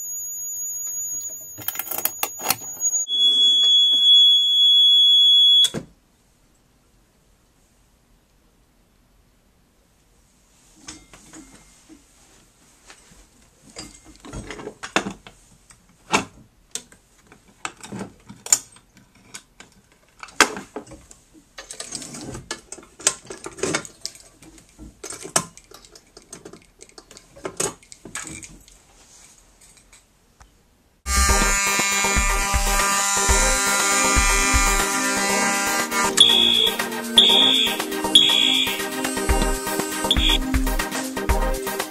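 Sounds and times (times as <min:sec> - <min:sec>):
fire alarm buzzing: 0:00.0 - 0:05.7, 0:31.1 - 0:40.5
hardware clicking and clattering: 0:01.6 - 0:02.7.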